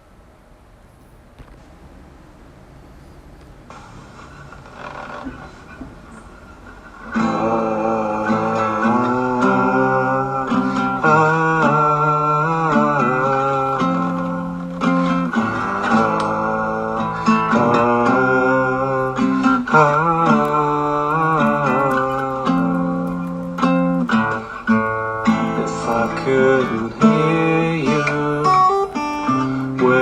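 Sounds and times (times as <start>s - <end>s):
acoustic guitar chords: 6.1s - 30.0s.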